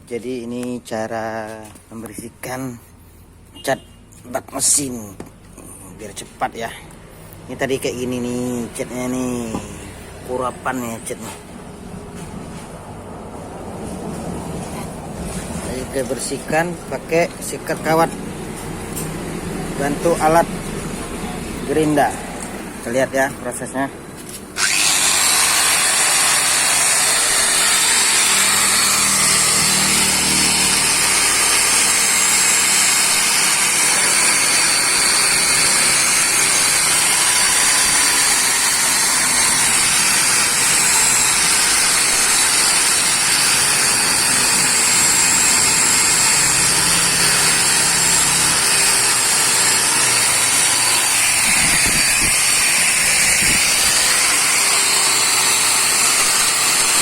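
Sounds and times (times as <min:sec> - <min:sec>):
wire brush grinder scraping metal: 0:24.2 - 0:57.0.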